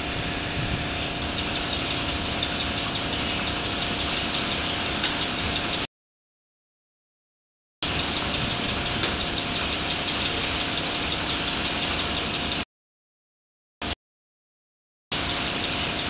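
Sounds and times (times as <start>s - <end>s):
cap-cutting machine running: 0.0s - 5.9s, 7.8s - 12.6s.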